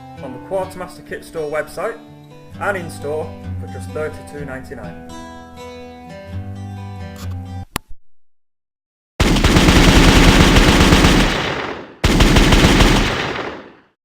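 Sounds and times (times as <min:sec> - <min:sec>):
automatic gunfire: 0:09.2 - 0:14.0.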